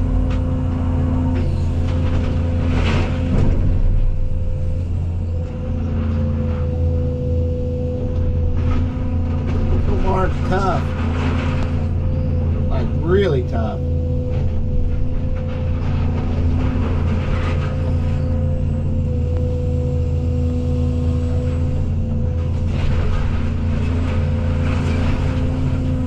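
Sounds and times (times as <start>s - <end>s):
excavator diesel engine: 0.0s - 26.0s
crackling and rattling: 8.2s - 13.4s, 14.2s - 18.7s, 22.1s - 26.0s.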